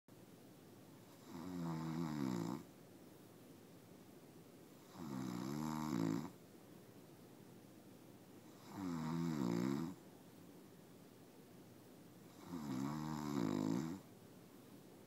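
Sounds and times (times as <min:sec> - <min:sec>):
man snoring: 0:01.2 - 0:02.6, 0:04.9 - 0:06.3, 0:08.6 - 0:10.0, 0:12.3 - 0:14.0.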